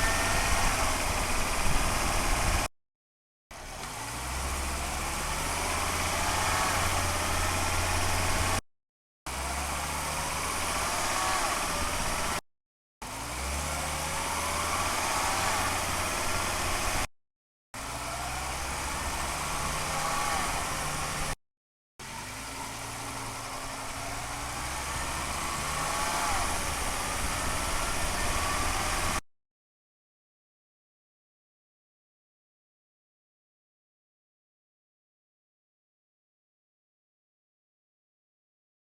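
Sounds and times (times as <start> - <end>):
car engine pulling away: 0.0 - 2.7, 3.5 - 8.6, 9.3 - 12.4, 13.0 - 17.1, 17.8 - 21.4, 22.0 - 29.2.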